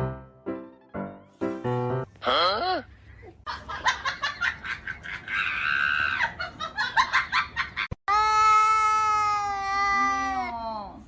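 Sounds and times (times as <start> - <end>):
person shrieking with laughter: 5.0 - 6.6.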